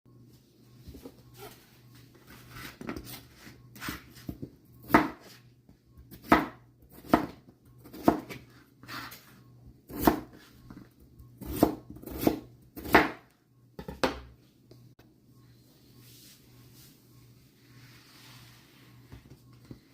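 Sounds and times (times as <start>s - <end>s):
knife chopping on cutting board: 6.1s - 9.2s, 9.9s - 10.5s, 11.4s - 13.2s.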